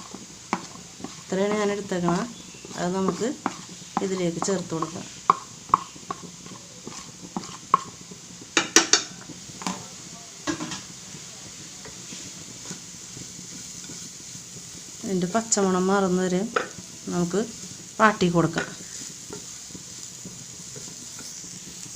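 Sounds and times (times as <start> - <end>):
faint sizzle: 0.0 - 21.9
metal spoon scraping frying pan: 0.1 - 8.0, 18.5 - 21.8.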